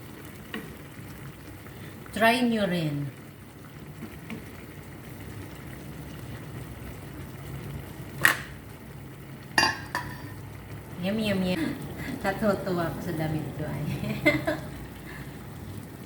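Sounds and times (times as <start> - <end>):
utensil clinking against dish: 9.6 - 10.4.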